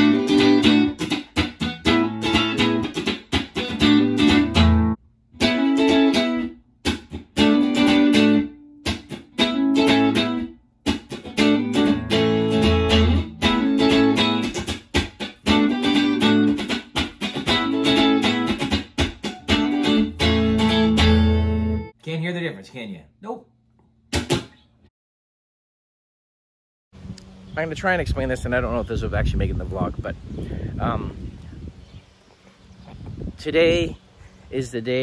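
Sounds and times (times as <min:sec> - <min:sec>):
electric guitar lick: 0:00.0 - 0:21.9, 0:24.1 - 0:24.6.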